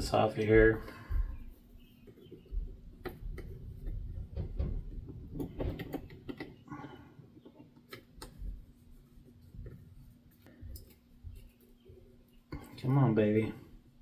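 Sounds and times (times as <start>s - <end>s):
hand tools clicking and tapping: 5.4s - 8.6s, 10.4s - 12.6s.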